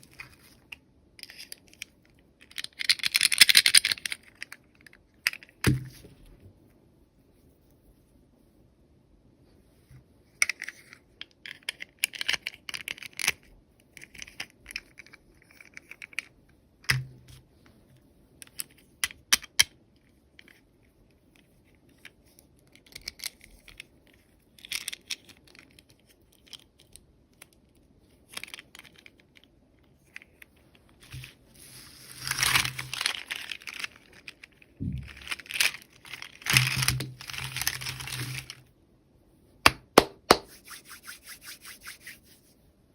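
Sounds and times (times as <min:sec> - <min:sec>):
plastic pieces clicking: 0:01.2 - 0:05.5, 0:32.2 - 0:38.6
wrapping crinkling and tearing: 0:31.1 - 0:38.6.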